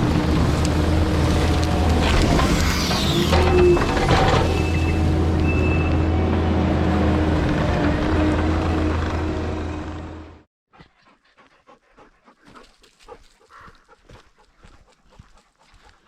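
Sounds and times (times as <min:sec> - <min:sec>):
diesel engine humming: 0:00.0 - 0:10.5.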